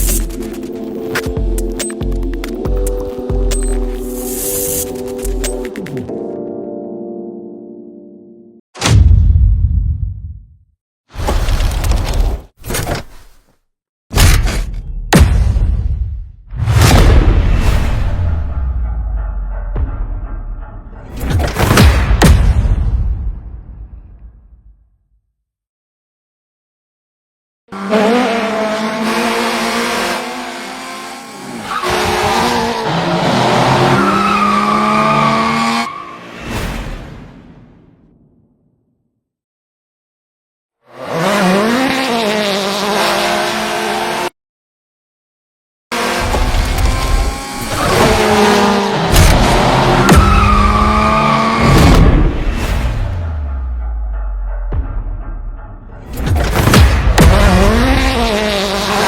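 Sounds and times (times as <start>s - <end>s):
car engine revving: 27.7s - 35.9s, 45.9s - 52.4s, 57.1s - 59.0s.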